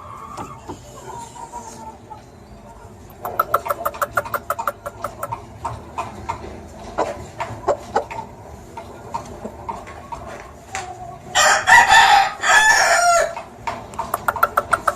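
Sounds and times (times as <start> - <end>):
short clucks and clicks: 3.1 - 5.8, 13.9 - 14.9
rooster crowing: 11.4 - 13.4.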